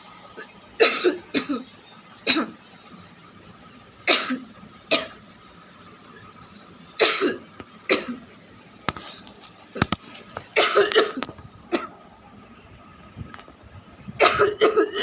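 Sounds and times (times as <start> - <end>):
person coughing: 10.6 - 11.9, 14.2 - 15.0.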